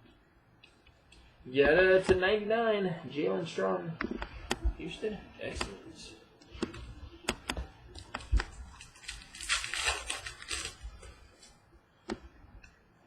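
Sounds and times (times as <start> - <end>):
crinkly rustling of card packs: 7.9 - 11.6.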